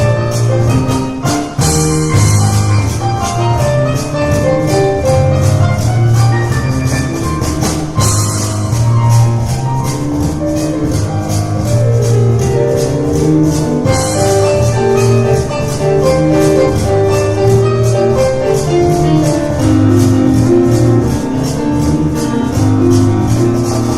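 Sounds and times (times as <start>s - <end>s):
cajon beat: 0.0s - 23.9s
piano notes: 0.0s - 23.9s.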